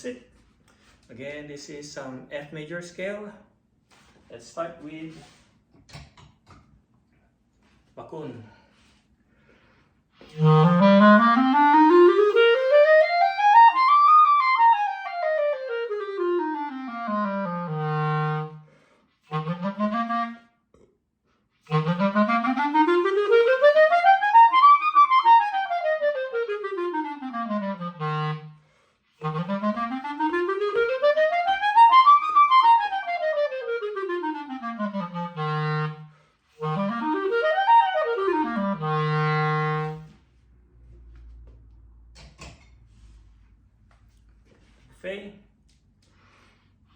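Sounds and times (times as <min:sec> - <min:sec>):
clarinet playing scales: 0:10.2 - 0:20.5, 0:21.7 - 0:40.2.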